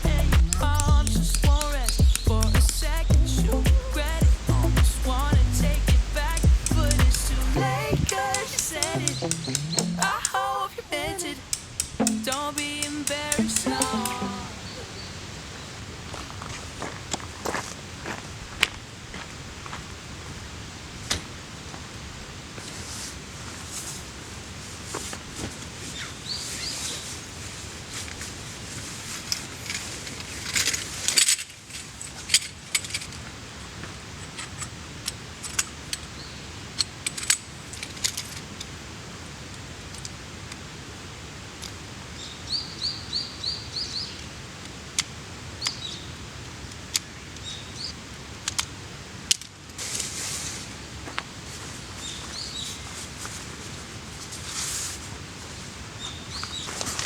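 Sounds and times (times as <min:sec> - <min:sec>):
small bird chirping: 0:08.2 - 0:10.1.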